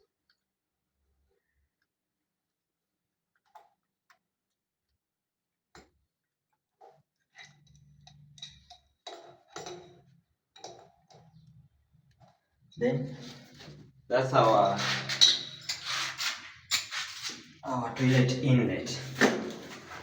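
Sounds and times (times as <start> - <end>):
plumbing fittings clicking and scraping: 6.9 - 18.3.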